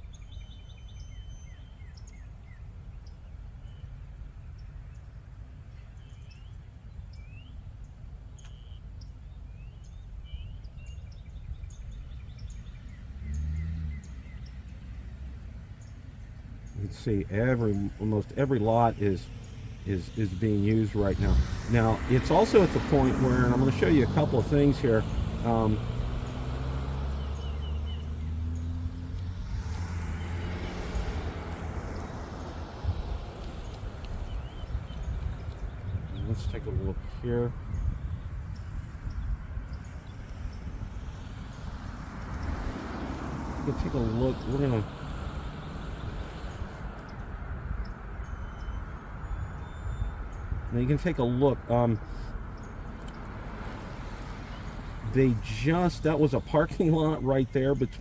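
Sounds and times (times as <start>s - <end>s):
birds chirping: 0.0s - 58.0s
vehicle engine hum: 0.0s - 58.0s.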